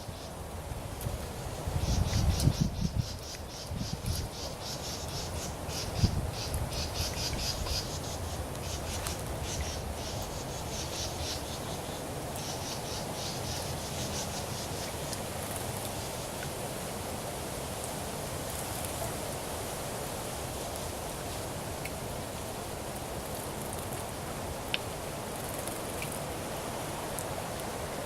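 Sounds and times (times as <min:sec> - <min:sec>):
cricket chirping: 0:00.0 - 0:00.4, 0:01.8 - 0:15.1.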